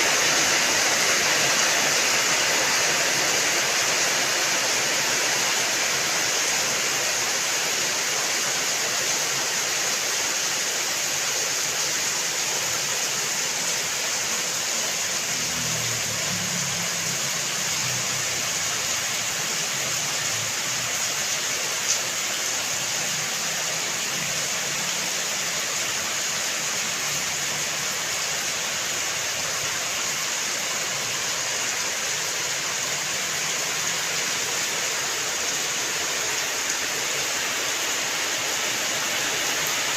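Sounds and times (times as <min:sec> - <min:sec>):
hiss of falling rain: 0:00.0 - 0:39.9.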